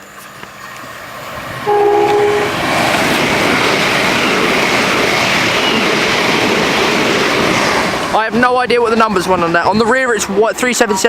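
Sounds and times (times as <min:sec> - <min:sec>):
train wheels rushing on rail: 0:00.0 - 0:11.0
two-tone train horn blast: 0:01.6 - 0:02.7.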